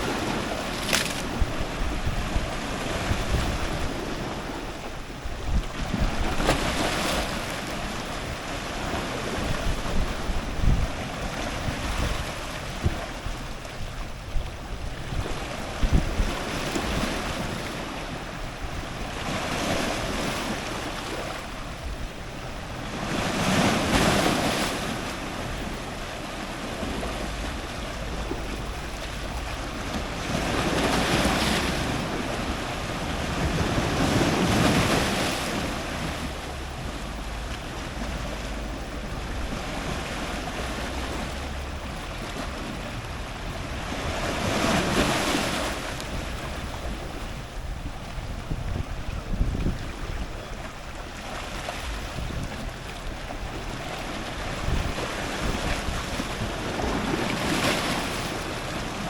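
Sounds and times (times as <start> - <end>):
water splashing crackles: 0.0 - 1.9
ocean surf breaking on rocks: 0.0 - 59.0
wind rumble on microphone: 0.0 - 59.0.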